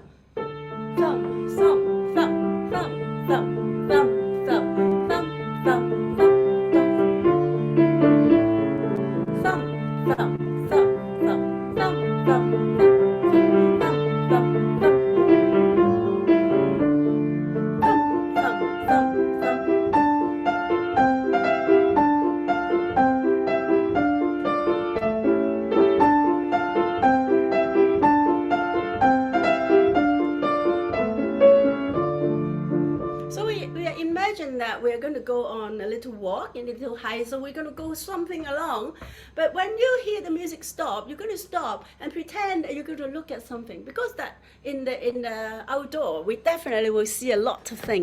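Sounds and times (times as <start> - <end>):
piano tune: 0.2 - 34.6.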